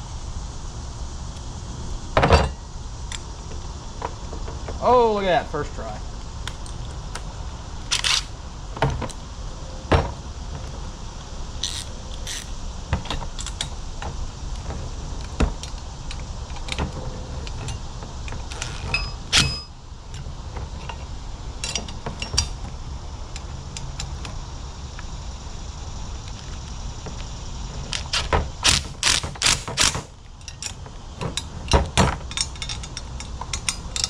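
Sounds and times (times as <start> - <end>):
tools clicking on metal: 7.9 - 8.3, 11.6 - 12.5, 18.5 - 19.7, 27.9 - 30.8, 32.3 - 34.0
ringing metal clank: 18.9 - 19.7.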